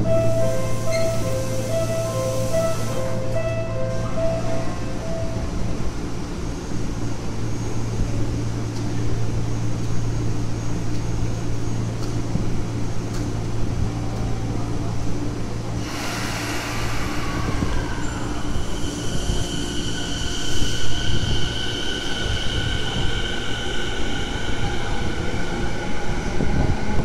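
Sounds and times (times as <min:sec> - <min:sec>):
train hiss: 0:00.0 - 0:05.3, 0:15.7 - 0:27.0
wheels squealing on rails: 0:00.0 - 0:05.8, 0:15.8 - 0:27.0
train low hum: 0:00.0 - 0:27.0.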